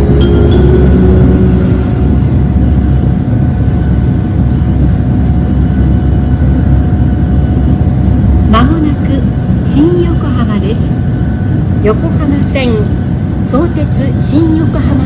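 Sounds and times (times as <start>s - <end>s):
train running rumble: 0.0s - 15.0s.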